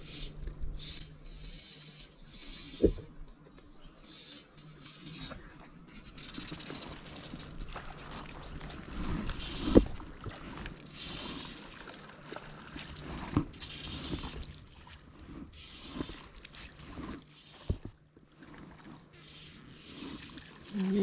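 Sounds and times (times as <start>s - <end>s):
water sloshing and splashing: 4.5s - 21.0s.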